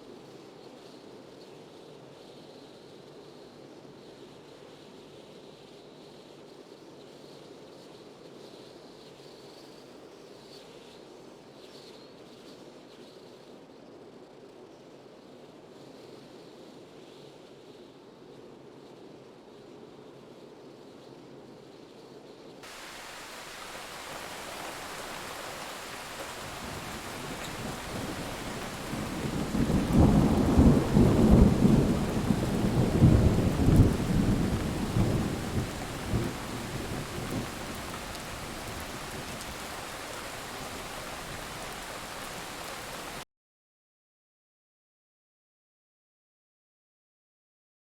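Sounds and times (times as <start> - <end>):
steady rain: 22.6 - 43.2
rolling thunder: 22.7 - 43.2.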